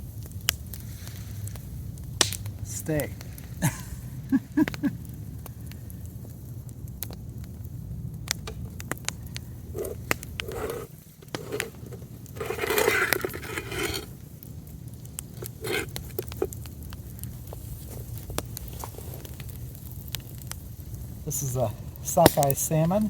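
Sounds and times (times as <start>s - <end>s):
campfire crackling and popping: 0.0s - 23.0s
scraping rustle: 9.7s - 14.1s, 15.3s - 16.6s.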